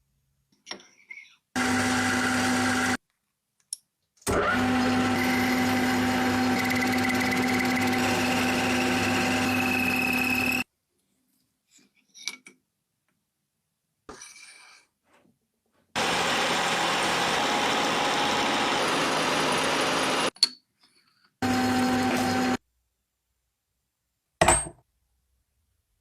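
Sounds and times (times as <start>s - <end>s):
small motor humming: 4.6s - 10.6s.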